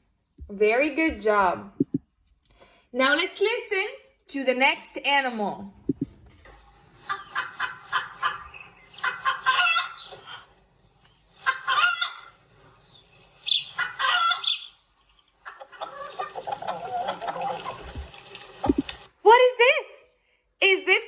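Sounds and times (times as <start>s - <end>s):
chicks peeping: 7.0s - 10.5s, 11.4s - 17.8s
hen cackling calls: 7.0s - 10.5s, 11.4s - 12.4s, 13.4s - 14.8s, 15.4s - 17.9s
hen clucking: 7.0s - 10.6s, 11.4s - 18.8s.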